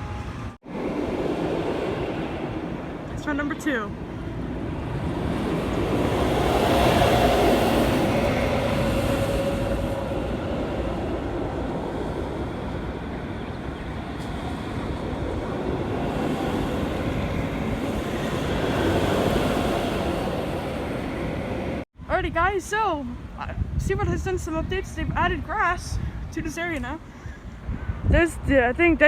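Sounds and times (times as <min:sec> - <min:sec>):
roller coaster wheels rumbling: 0:00.0 - 0:22.8.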